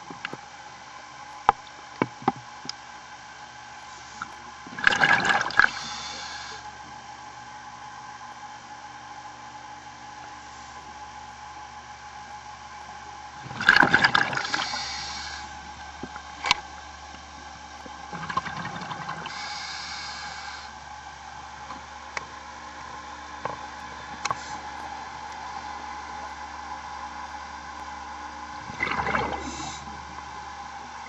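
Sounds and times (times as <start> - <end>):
steady machinery hum: 0.0 - 31.0
exhaled bubbles: 4.2 - 6.5, 13.4 - 15.6, 18.1 - 20.3, 28.5 - 30.4
diver breathing through regulator: 5.5 - 6.7, 14.2 - 15.6, 18.2 - 20.8, 28.8 - 30.1.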